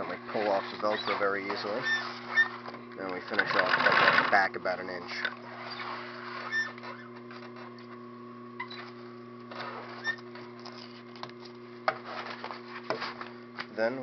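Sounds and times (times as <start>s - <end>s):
sewing machine running: 3.3s - 4.4s.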